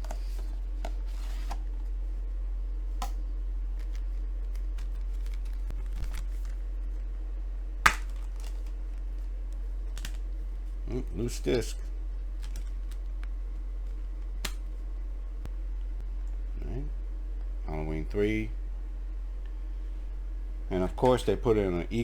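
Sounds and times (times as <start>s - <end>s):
low electrical hum: 0.0s - 22.0s
sharp plastic snap: 7.9s - 8.5s
plastic disc cases clicking: 7.9s - 8.7s, 9.9s - 10.2s.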